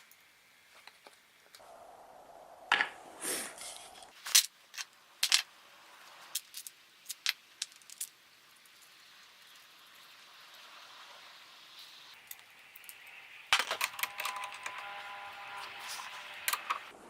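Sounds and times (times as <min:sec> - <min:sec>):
faint steady hum: 0:00.0 - 0:17.0
sharp clicks of small objects: 0:06.3 - 0:08.2.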